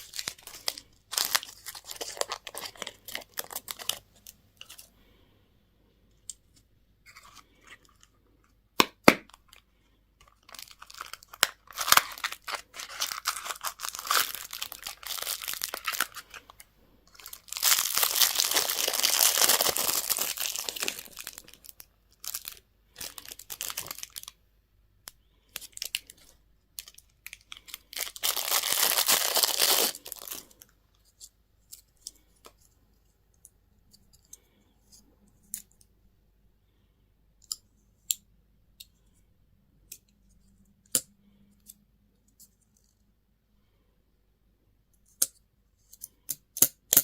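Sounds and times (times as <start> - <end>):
candy wrapper tearing and crinkling: 0.0 - 4.9, 10.2 - 24.4, 25.1 - 30.7, 46.3 - 47.0.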